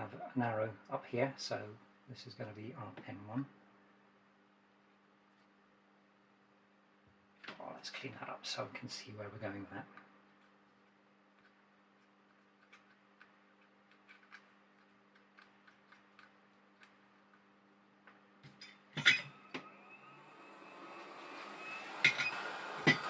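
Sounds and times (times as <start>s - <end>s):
hot air blower hissing: 19.3s - 23.0s.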